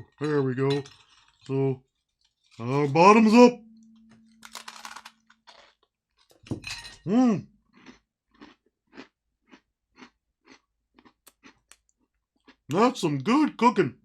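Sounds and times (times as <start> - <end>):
person chewing crunchy cookies: 1.0 - 2.9, 4.3 - 6.4, 7.0 - 13.0.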